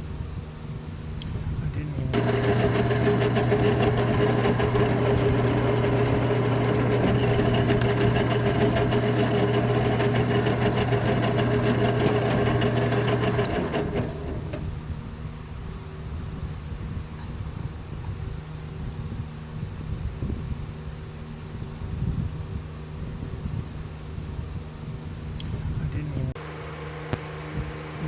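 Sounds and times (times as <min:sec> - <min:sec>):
lathe motor hum: 0:02.1 - 0:14.8.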